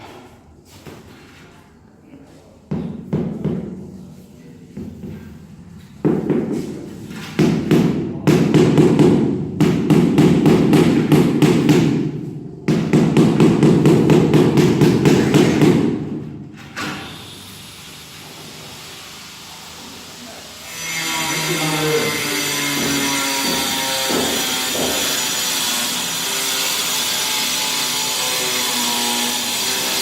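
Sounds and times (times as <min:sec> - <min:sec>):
rapid repeated knocking: 0:07.4 - 0:12.1.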